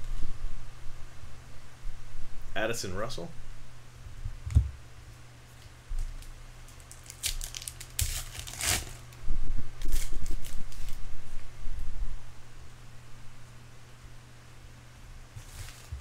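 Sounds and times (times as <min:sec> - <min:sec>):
low electrical hum: 0:00.0 - 0:16.0
wrapper crinkling: 0:06.1 - 0:09.1, 0:09.8 - 0:11.0, 0:15.4 - 0:16.0.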